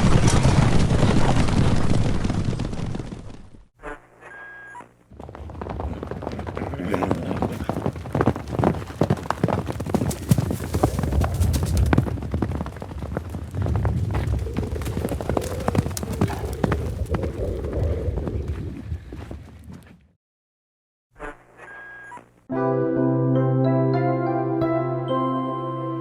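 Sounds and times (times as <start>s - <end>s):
horse hoofbeats: 3.8s - 20.1s.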